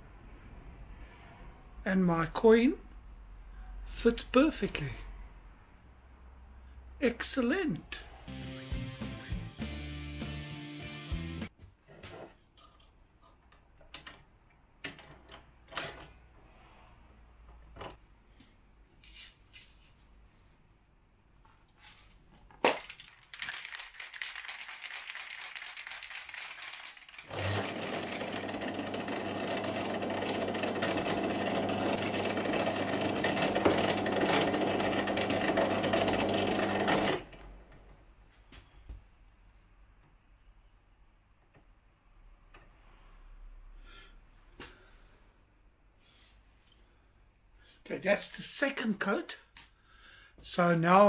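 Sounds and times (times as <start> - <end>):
electric motor humming: 27.3 - 37.2.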